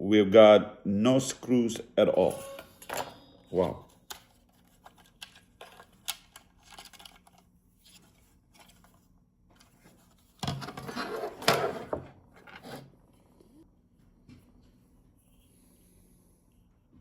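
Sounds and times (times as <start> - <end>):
plastic parts clicking: 4.1 - 7.4.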